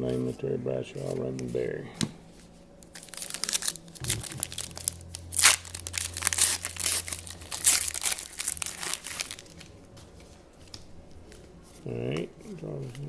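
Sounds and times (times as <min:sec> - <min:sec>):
card pack wrapper crinkling: 0:02.8 - 0:11.5.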